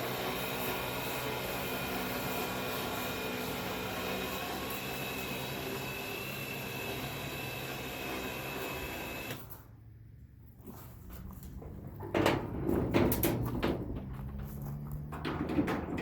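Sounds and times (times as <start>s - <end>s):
electric winch motor whining: 0.0s - 9.5s.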